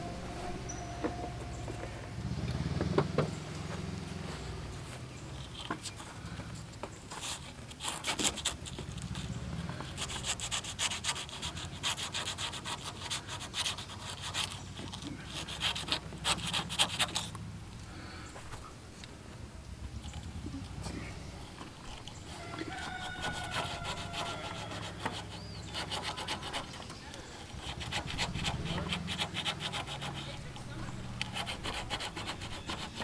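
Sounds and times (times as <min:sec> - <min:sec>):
low steady hum: 0:00.0 - 0:02.5
hand rubbing and scraping: 0:02.8 - 0:17.4, 0:20.0 - 0:33.0.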